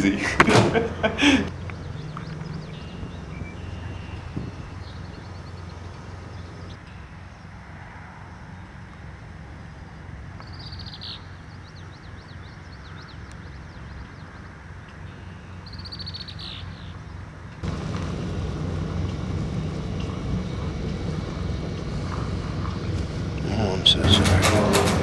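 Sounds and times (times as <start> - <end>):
steady low rumble: 0.7 - 6.8, 17.6 - 25.0
small bird chirping: 10.4 - 14.4, 15.1 - 17.2.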